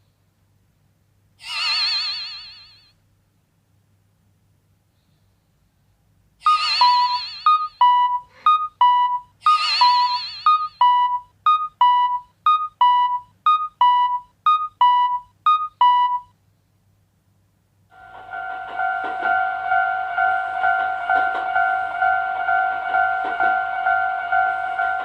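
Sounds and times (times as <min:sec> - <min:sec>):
steady held tone: 0:06.4 - 0:15.2
railroad crossing ding: 0:06.4 - 0:16.2, 0:17.9 - 0:25.0.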